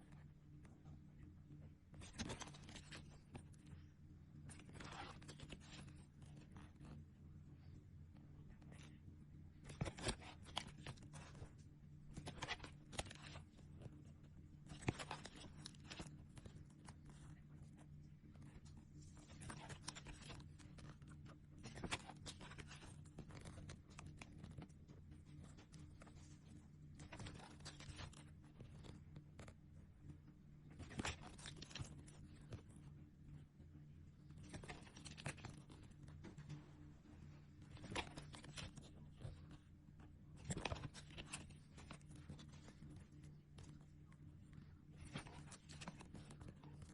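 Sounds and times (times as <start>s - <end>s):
steady low hum: 0.0s - 46.9s
plastic sticker packets crinkling: 12.1s - 13.5s, 14.7s - 17.3s, 19.2s - 21.0s, 25.4s - 29.0s.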